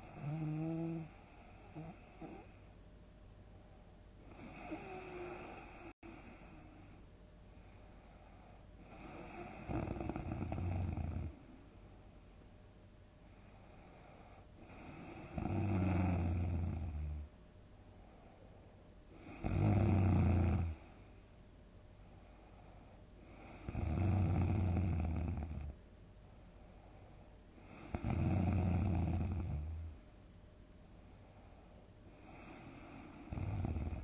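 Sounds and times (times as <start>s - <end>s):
person snoring heavily: 0.0s - 2.5s, 4.3s - 6.4s, 8.9s - 11.4s, 14.6s - 17.2s, 19.2s - 20.8s, 23.4s - 25.7s, 27.7s - 29.9s, 32.3s - 34.0s
quiet breathing: 0.0s - 34.0s.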